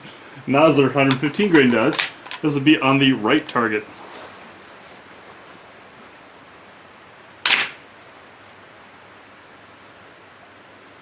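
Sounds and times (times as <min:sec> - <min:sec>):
steady hiss: 0:00.0 - 0:11.0
gunshot: 0:07.5 - 0:07.8.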